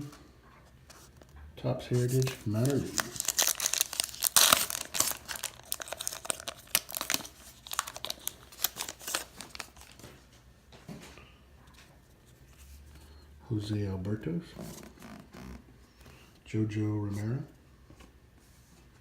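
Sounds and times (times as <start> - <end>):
foil wrapper crinkling: 1.9 - 10.2
foil pack tearing: 2.0 - 10.0.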